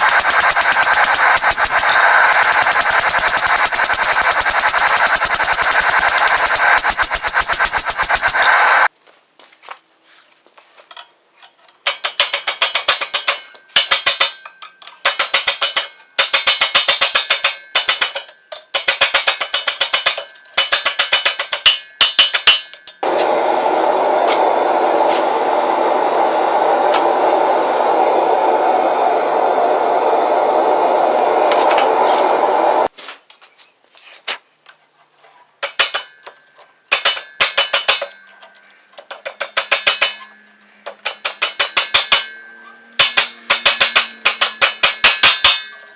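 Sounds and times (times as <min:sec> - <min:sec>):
steady rushing noise: 0:00.0 - 0:08.9, 0:23.0 - 0:32.9
hammer striking steel on anvil: 0:11.9 - 0:23.3, 0:35.6 - 0:38.3, 0:39.2 - 0:45.9.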